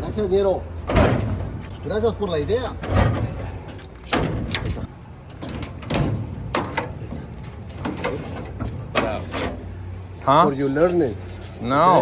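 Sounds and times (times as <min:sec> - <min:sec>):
metal knocks and clunks: 0:00.0 - 0:01.8, 0:02.5 - 0:10.0
metal drawers scraping: 0:00.0 - 0:12.0.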